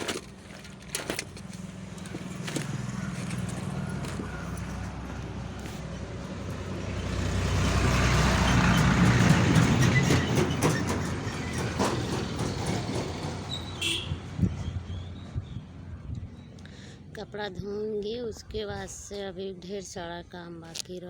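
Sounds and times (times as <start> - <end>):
vehicle engine passing by: 1.6 - 13.5.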